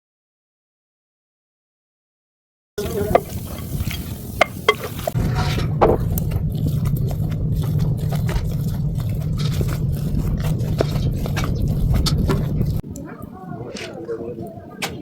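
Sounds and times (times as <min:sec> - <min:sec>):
food frying with crackles: 0:02.8 - 0:12.8
utensil scraping a pan: 0:02.8 - 0:12.8.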